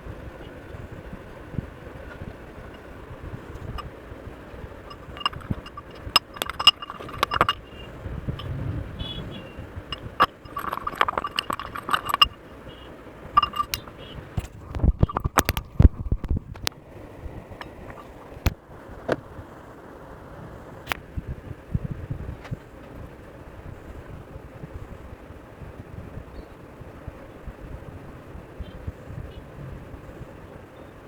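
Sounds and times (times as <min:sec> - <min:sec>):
utensil clinking on container: 0:04.8 - 0:08.6, 0:09.9 - 0:15.9, 0:17.6 - 0:18.4.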